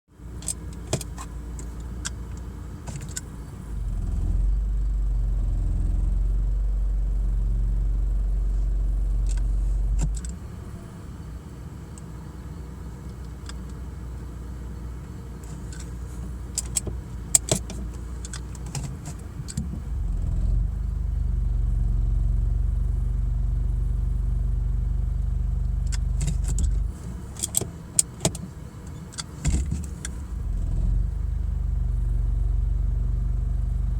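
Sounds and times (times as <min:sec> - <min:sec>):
car engine idling: 0:00.1 - 0:33.9
low thumping drone: 0:19.3 - 0:27.0
sharp clicks: 0:25.9 - 0:30.4.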